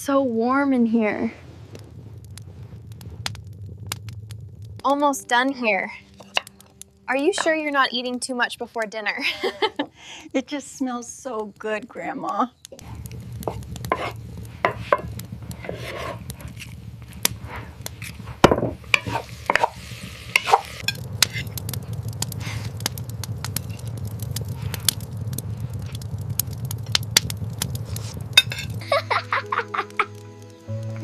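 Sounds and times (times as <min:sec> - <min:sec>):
low rumble: 0:00.0 - 0:10.0, 0:12.6 - 0:29.4
food sizzling: 0:00.0 - 0:31.0
utensil scraping a pot: 0:12.8 - 0:24.0.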